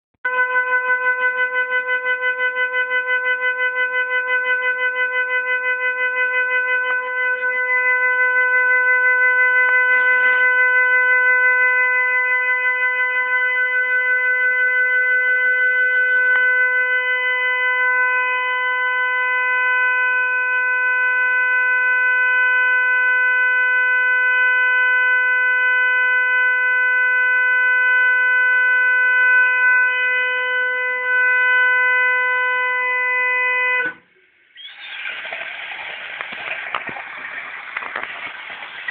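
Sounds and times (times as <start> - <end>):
water tap humming tone: 33.9 - 38.9.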